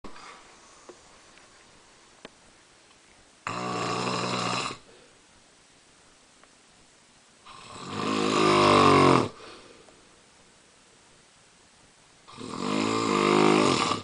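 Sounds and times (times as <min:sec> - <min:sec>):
man snoring loudly: 0:03.4 - 0:04.9, 0:07.5 - 0:09.4, 0:12.3 - 0:14.0.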